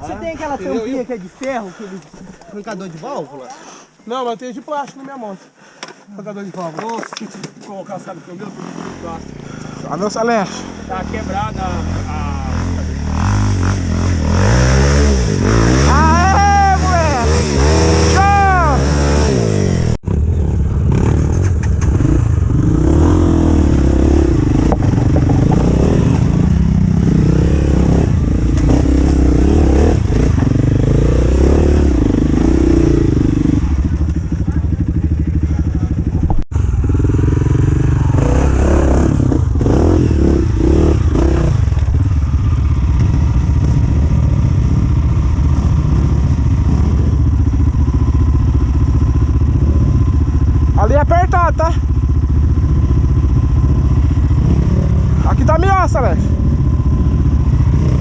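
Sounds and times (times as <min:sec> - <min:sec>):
dirt bike engines revving: 0:00.0 - 0:05.2, 0:05.8 - 0:58.0.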